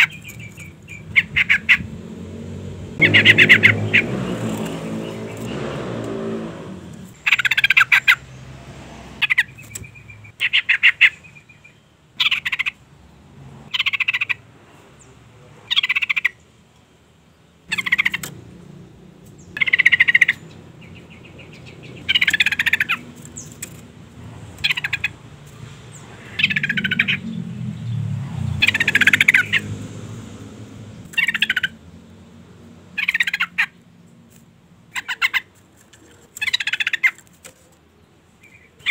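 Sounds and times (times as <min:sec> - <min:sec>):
bird chattering calls: 0:00.0 - 0:01.9, 0:03.0 - 0:05.7, 0:07.1 - 0:08.3, 0:09.2 - 0:12.8, 0:13.7 - 0:14.4, 0:15.7 - 0:16.4, 0:17.7 - 0:18.4, 0:19.3 - 0:27.9, 0:28.5 - 0:29.7, 0:31.0 - 0:31.8, 0:33.0 - 0:33.8, 0:34.9 - 0:37.3, 0:38.4 - 0:38.9.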